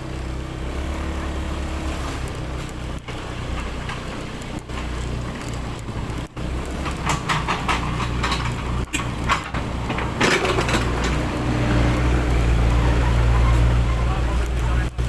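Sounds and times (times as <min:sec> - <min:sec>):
engine running steadily: 0:00.0 - 0:15.0
irregular clattering and knocks: 0:02.3 - 0:13.8.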